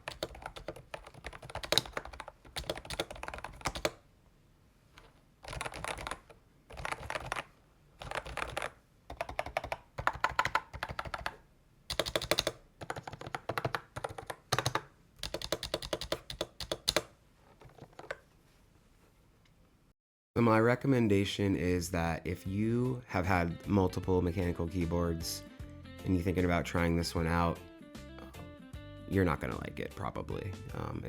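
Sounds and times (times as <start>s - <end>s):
keyboard typing: 0.0s - 4.0s, 5.0s - 18.2s.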